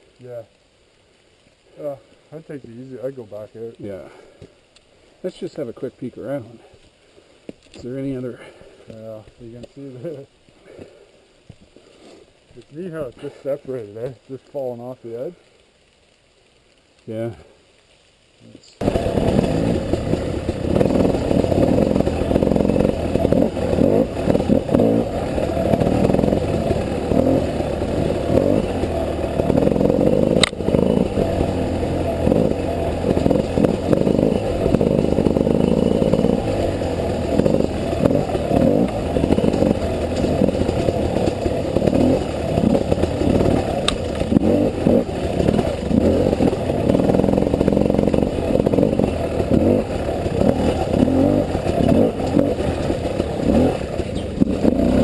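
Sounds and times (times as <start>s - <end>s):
two-stroke motorcycle engine revving: 18.8s - 55.0s.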